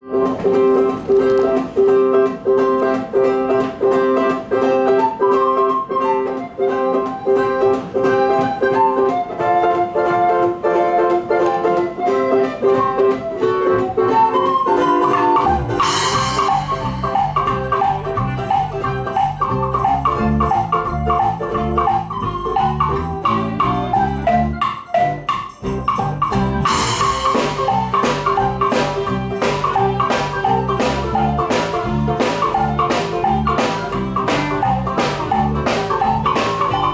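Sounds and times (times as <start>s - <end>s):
live band playing: 0.1s - 36.9s
plucked melodic notes: 0.1s - 36.9s
cymbal crashes: 15.8s - 17.8s.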